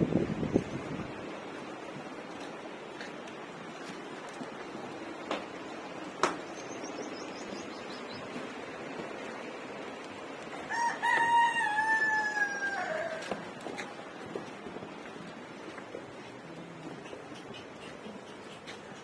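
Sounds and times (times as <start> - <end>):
rooster crowing: 10.6 - 13.5.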